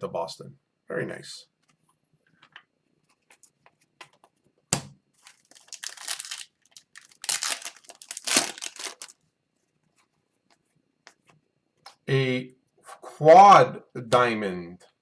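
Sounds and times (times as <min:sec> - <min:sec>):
wrapper being torn open: 0:05.2 - 0:09.2
wrapper crinkling: 0:05.2 - 0:09.2.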